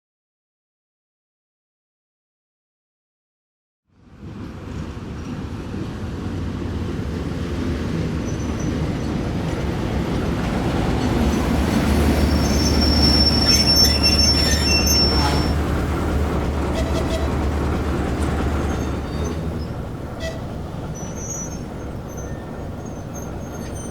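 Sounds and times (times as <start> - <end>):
diesel locomotive engine droning: 3.9 - 23.9
high-pitched wheel squeal: 12.1 - 15.7, 16.7 - 17.5, 18.6 - 23.9.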